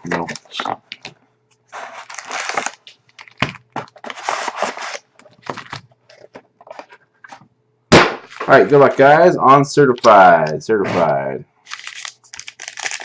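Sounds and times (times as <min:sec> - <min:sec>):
plastic wrap crinkling and tearing: 0:01.7 - 0:06.4, 0:11.6 - 0:13.0.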